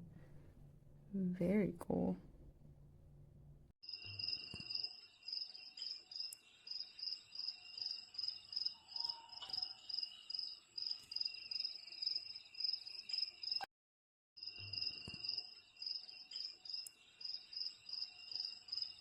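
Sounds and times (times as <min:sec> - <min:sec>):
recorded cricket chirping: 0:03.8 - 0:13.7, 0:14.4 - 0:19.0.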